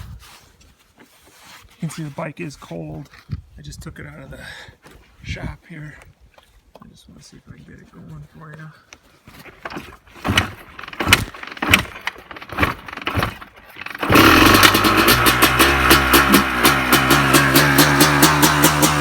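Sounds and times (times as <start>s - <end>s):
motorcycle kick-start: 9.4s - 19.0s
two-stroke engine running: 9.7s - 19.0s.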